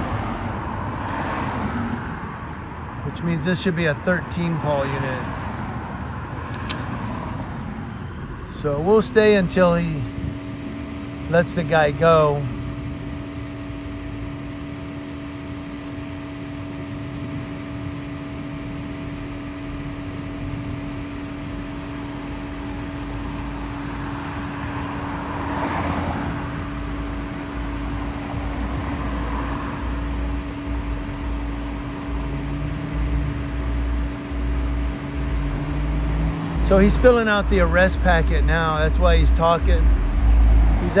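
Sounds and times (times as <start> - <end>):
car passing: 0.0 - 12.9, 21.5 - 41.0
vehicle idling hum: 0.0 - 41.0
heavy low rumble: 19.7 - 41.0.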